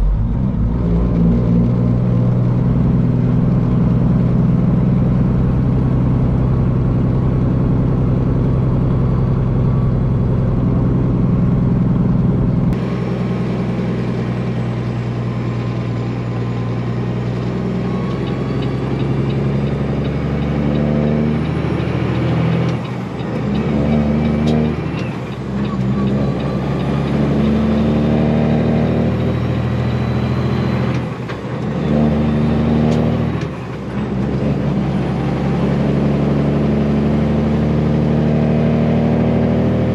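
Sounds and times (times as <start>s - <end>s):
truck diesel engine drone: 0.0s - 39.9s.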